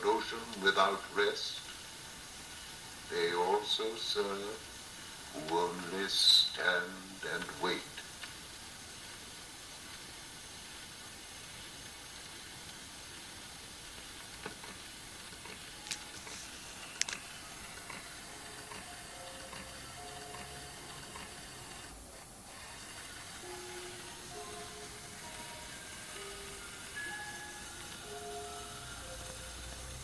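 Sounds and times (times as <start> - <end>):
faint held musical notes: 0.0 - 8.0, 14.7 - 30.0
steady hiss: 0.0 - 30.0.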